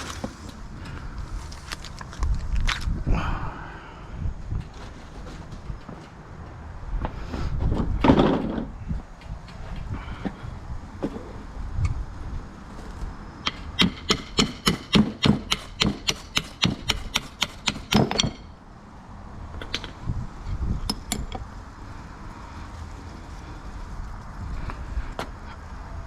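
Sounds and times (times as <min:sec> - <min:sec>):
hammer striking metal: 0:13.4 - 0:18.5.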